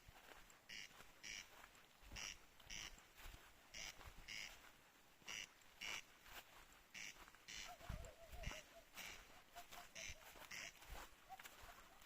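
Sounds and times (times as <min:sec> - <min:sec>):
animal rasping calls: 0:07.0 - 0:10.8.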